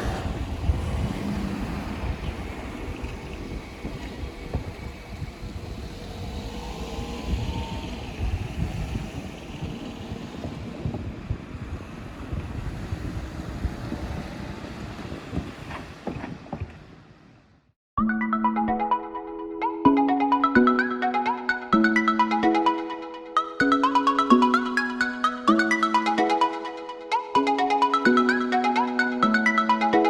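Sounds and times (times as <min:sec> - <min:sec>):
electric train rumbling: 0:00.0 - 0:16.1
wind buffeting microphone: 0:00.0 - 0:17.3
electronic background music: 0:18.0 - 0:30.0.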